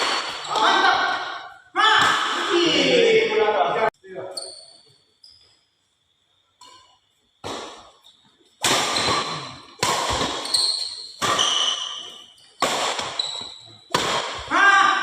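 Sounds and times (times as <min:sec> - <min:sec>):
shoes squeaking on court: 0:04.3 - 0:05.8, 0:10.1 - 0:13.9
rackets striking shuttlecock: 0:08.6 - 0:14.5.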